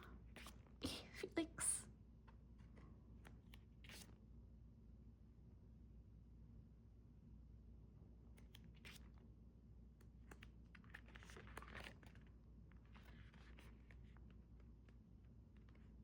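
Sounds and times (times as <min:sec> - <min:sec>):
glossy paper pages turning: 0:00.3 - 0:00.6, 0:03.3 - 0:04.2, 0:08.4 - 0:09.2, 0:10.2 - 0:16.0.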